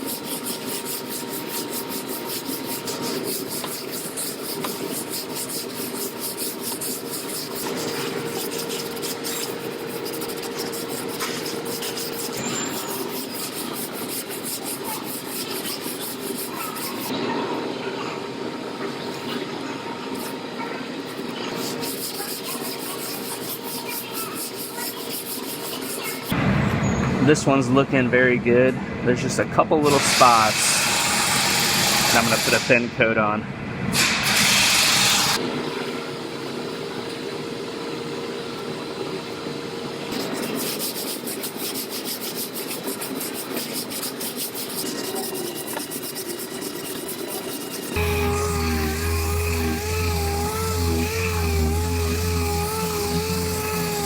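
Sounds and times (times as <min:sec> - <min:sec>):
hand scraping on steel panel: 0:00.0 - 0:17.1, 0:21.1 - 0:26.3, 0:40.1 - 0:54.0
sanding body filler: 0:00.0 - 0:17.1, 0:21.0 - 0:26.4, 0:29.9 - 0:32.8, 0:34.0 - 0:35.4, 0:40.1 - 0:54.0
steady hum: 0:45.7 - 0:54.0.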